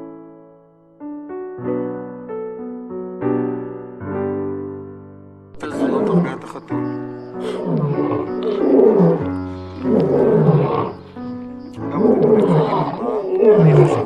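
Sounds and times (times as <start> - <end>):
large animal roaring: 5.6 - 6.7, 7.4 - 11.2, 11.8 - 14.0.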